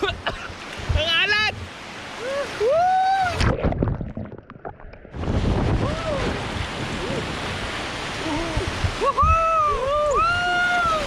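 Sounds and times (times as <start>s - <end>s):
waves rushing: 0.0s - 11.0s
wind noise on microphone: 5.1s - 11.0s.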